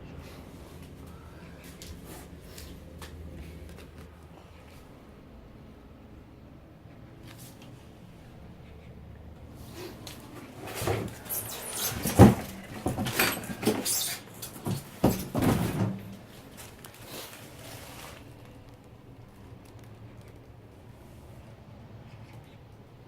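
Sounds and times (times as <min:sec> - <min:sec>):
objects rustling and scraping: 0:09.5 - 0:18.6.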